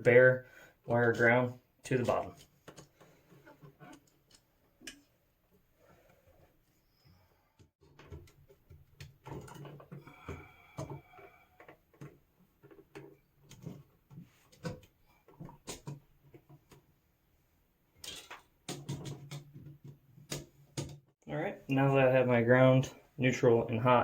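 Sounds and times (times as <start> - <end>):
clicks and knocks of wiring work: 0.9 - 5.1, 7.6 - 16.9, 18.0 - 21.1.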